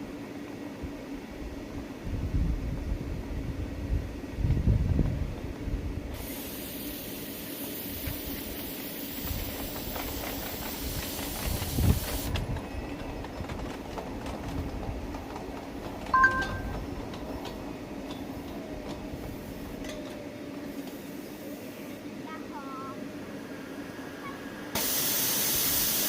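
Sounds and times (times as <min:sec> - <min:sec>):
steam hissing: 0:06.1 - 0:12.5, 0:23.2 - 0:26.0
sharp high two-tone sound: 0:16.2 - 0:16.8.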